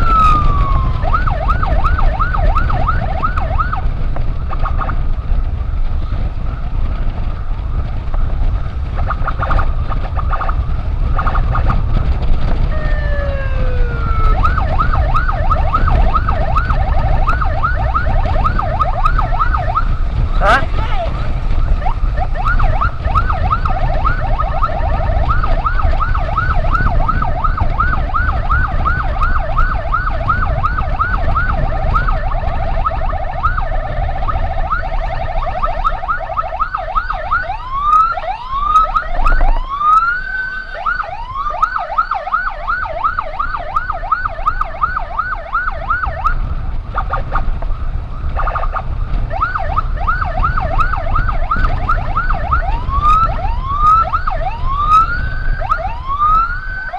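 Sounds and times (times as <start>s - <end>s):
electronic emergency siren: 0.0s - 5.0s, 9.0s - 11.8s, 12.6s - 47.5s, 48.1s - 56.9s
low rumble: 0.0s - 39.8s.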